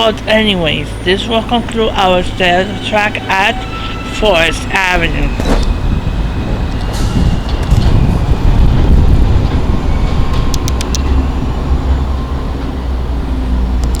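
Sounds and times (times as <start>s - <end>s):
subway train rumbling: 0.0s - 14.0s
sharp metallic clicks: 10.3s - 11.1s.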